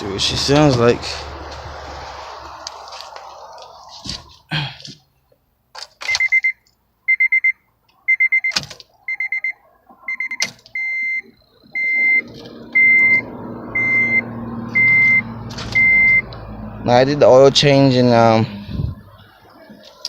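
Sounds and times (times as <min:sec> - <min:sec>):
car engine starting and idling: 0:00.0 - 0:06.4, 0:07.7 - 0:20.0
car warning chime beeping: 0:06.0 - 0:16.6.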